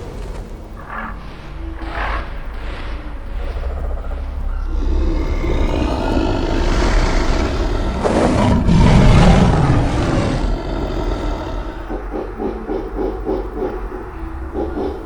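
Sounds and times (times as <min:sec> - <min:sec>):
animal roar: 0:00.8 - 0:13.0.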